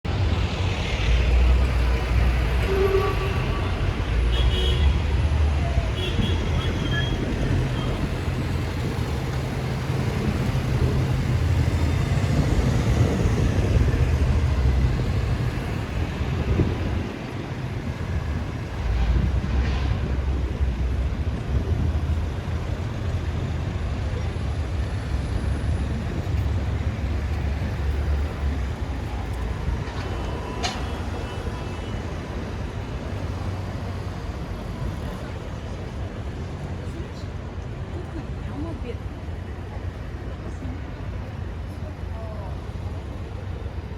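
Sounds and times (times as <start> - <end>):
street traffic rumble: 0.0 - 43.9.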